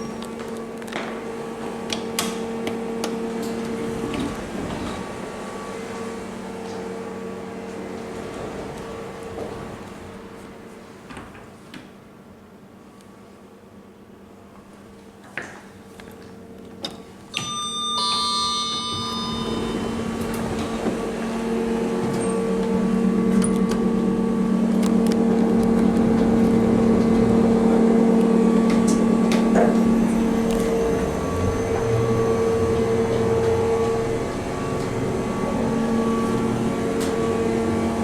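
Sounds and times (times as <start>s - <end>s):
lift chime: 17.3s - 23.8s, 29.1s - 37.4s
lift hum: 17.4s - 38.0s.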